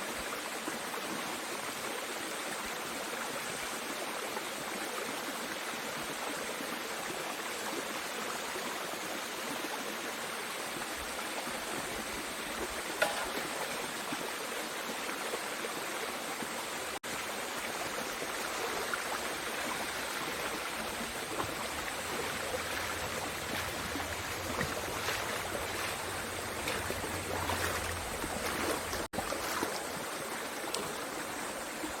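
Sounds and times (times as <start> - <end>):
stream flowing over rocks: 0.0 - 32.0.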